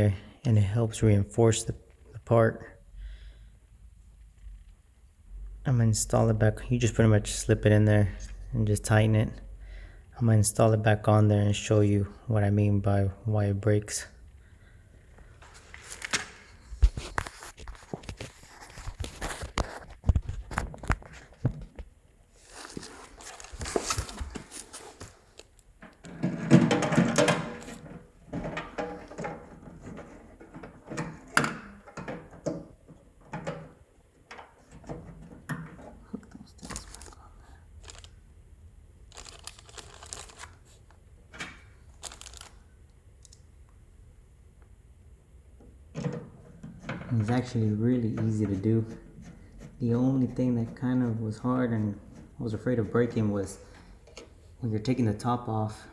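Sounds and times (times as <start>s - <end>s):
plastic parts clicking and knocking: 25.4s - 37.2s
plastic rubbing: 34.5s - 38.2s, 39.1s - 40.9s, 46.7s - 54.2s.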